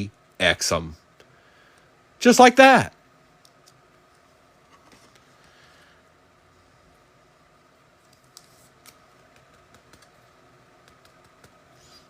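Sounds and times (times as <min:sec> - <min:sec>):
quiet room hum: 0:00.0 - 0:12.0
small clicks and taps: 0:10.8 - 0:11.6.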